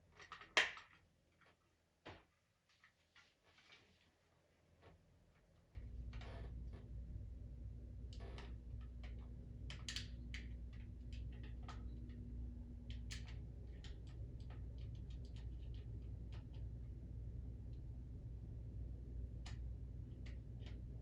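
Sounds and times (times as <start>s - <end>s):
low steady hum: 5.8s - 21.0s.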